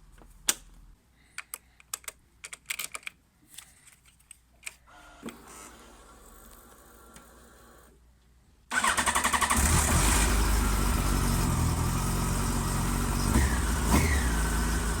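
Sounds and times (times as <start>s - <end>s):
motorcycle starter cranking: 8.7s - 10.4s
engine revving: 8.7s - 15.0s.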